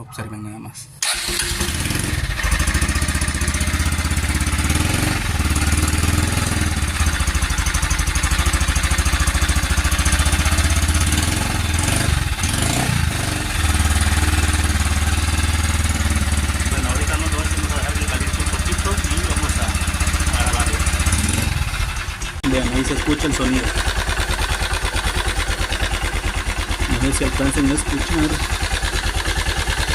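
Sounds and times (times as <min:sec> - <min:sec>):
single-cylinder engine running: 0:01.0 - 0:29.9
engine rattling knock: 0:13.5 - 0:29.9.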